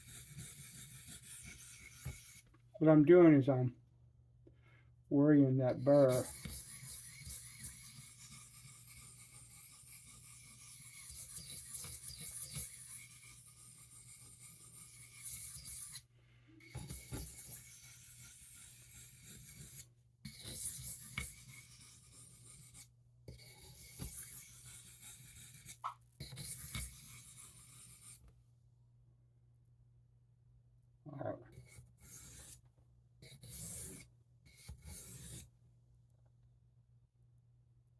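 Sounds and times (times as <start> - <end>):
knife scraping on sharpening stone: 0.0 - 2.4, 5.8 - 28.2, 31.5 - 32.6, 33.2 - 35.5.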